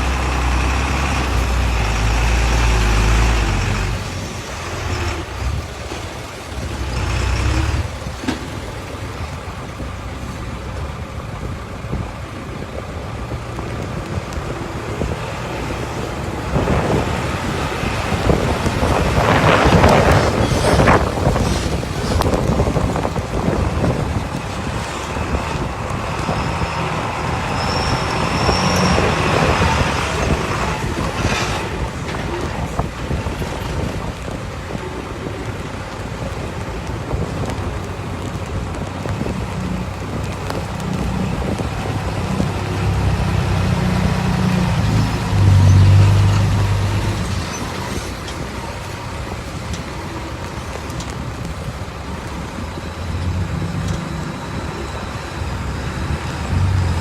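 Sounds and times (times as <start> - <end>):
road traffic: 0.0 - 57.0
truck diesel engines running: 0.0 - 57.0
high squeal: 26.3 - 31.7.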